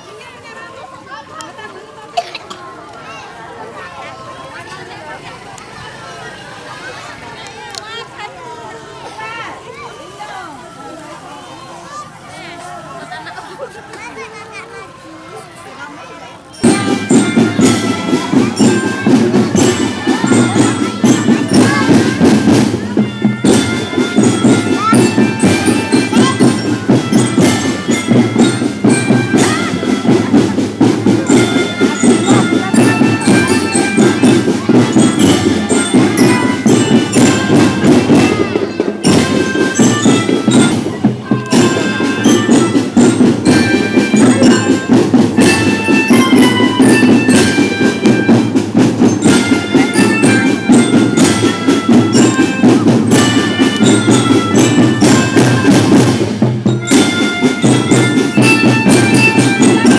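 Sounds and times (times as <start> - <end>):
bell lyre melody: 16.5 - 59.9
snare and bass drums marching: 16.5 - 59.9.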